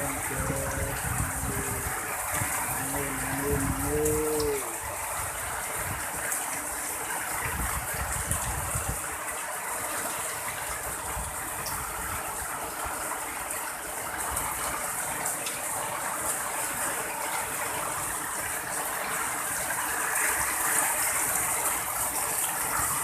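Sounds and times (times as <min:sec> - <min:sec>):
wind buffeting microphone: 0:00.0 - 0:06.2, 0:07.4 - 0:09.1
heavy rain pouring: 0:00.0 - 0:23.0.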